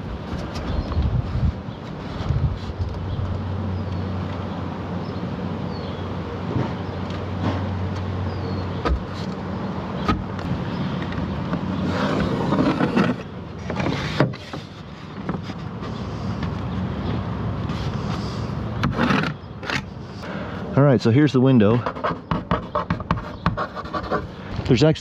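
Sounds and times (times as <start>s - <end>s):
low mechanical hum: 0.0s - 25.0s.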